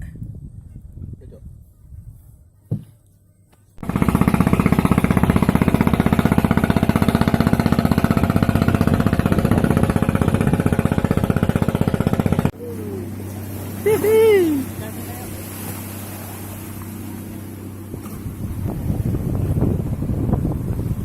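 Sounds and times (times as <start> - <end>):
boat engine running: 3.8 - 21.0.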